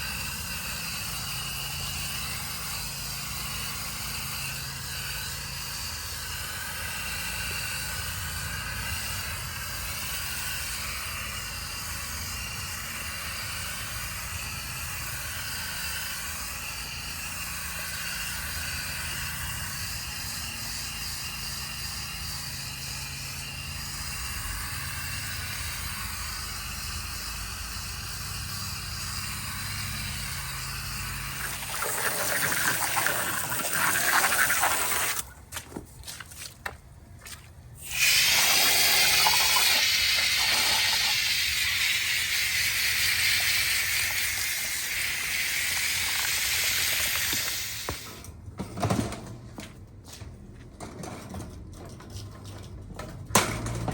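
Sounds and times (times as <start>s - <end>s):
garden hose spraying water: 27.9s - 48.2s.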